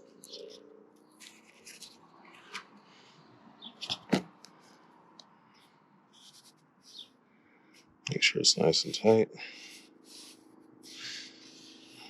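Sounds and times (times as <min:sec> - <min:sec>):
paper backing rustling: 0:01.2 - 0:02.7.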